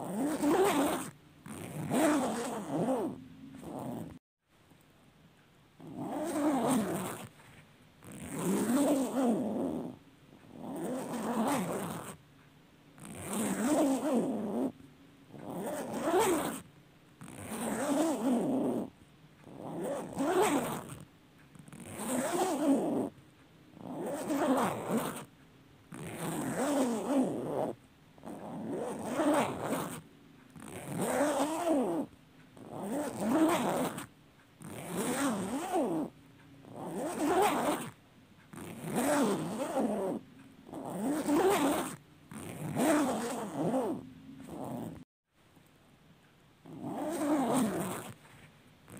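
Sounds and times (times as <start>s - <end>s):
clothing zipper rasping: 0.0s - 4.2s, 5.8s - 12.2s, 13.0s - 25.3s, 25.9s - 45.1s, 46.6s - 48.9s.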